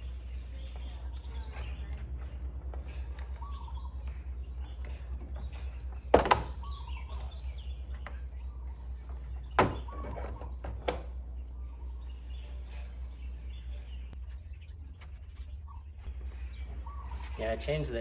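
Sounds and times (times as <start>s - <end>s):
faint bird chirps: 0.0s - 18.0s
low hum: 0.0s - 18.0s
sharp knocks: 6.1s - 6.7s.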